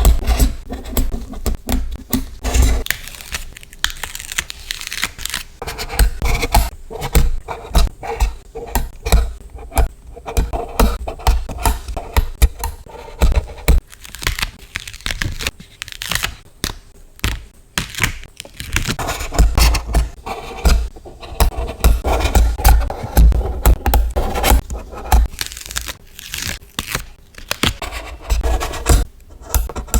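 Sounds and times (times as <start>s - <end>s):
stickers being peeled: 2.8s - 5.6s, 13.8s - 19.0s.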